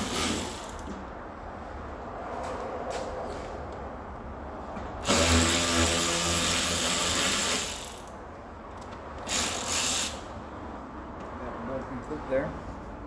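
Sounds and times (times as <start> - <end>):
handheld power tool running: 5.0 - 8.1, 9.3 - 10.2.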